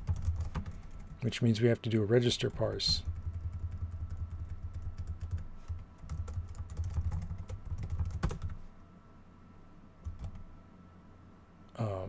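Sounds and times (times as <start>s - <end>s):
typing on computer keyboard: 0.0s - 1.3s, 2.6s - 8.6s, 10.0s - 10.4s.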